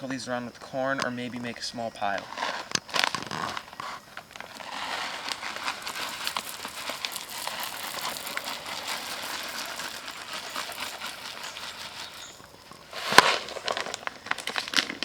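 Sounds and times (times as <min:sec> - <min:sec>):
plastic bag crinkling: 0:02.1 - 0:15.0
pellets ticking as they land: 0:04.3 - 0:15.0.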